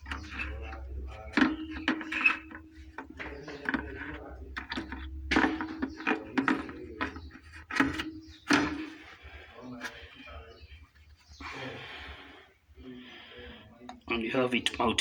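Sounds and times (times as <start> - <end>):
knocks and clicks of casing: 1.3 - 9.0.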